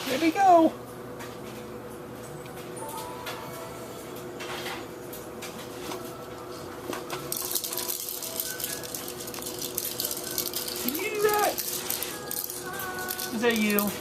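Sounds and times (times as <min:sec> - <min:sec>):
baby rattle shaking: 0:07.3 - 0:14.0.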